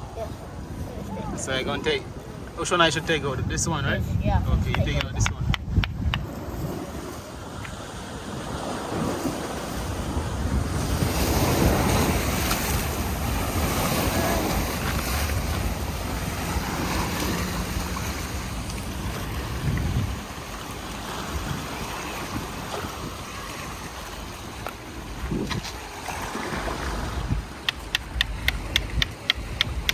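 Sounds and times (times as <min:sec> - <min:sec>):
waves washing on shore: 0:00.0 - 0:29.9
wind buffeting microphone: 0:00.0 - 0:29.9
sharp clicks: 0:27.6 - 0:29.9.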